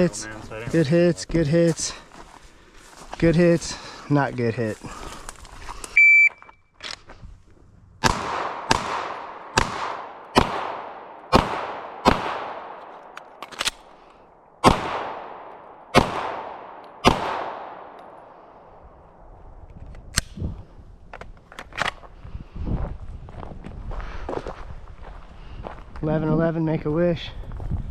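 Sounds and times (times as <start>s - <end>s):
shot timer beep: 6.0s - 6.5s
echoing gunshots: 8.0s - 13.9s, 14.6s - 18.7s.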